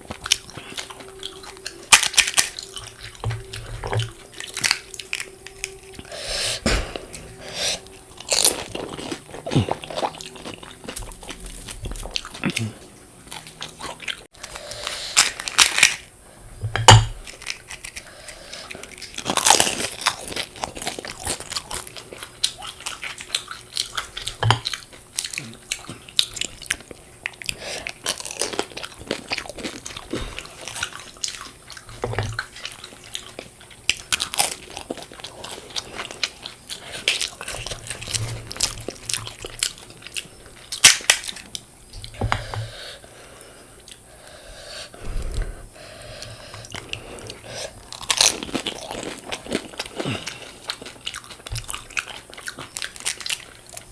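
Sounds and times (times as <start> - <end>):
crunching crisp food: 0.0 - 16.2, 16.9 - 44.1, 45.9 - 53.9.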